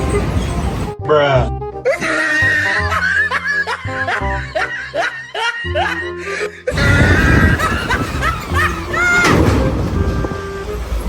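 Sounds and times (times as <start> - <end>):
background music with bass line: 0.0 - 9.0
laughter in short bursts: 1.9 - 8.9.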